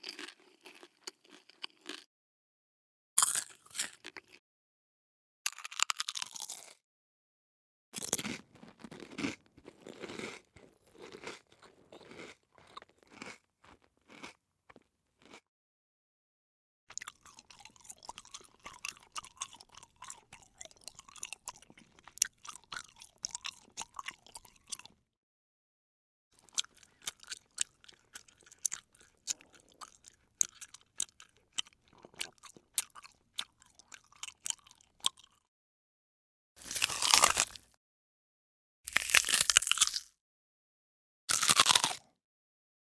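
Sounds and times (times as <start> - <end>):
person chewing crunchy food: 0.0 - 2.1, 3.2 - 4.4, 5.5 - 6.8, 8.0 - 15.5, 16.9 - 25.0, 26.4 - 35.5, 36.6 - 37.8, 38.9 - 40.1, 41.3 - 42.1.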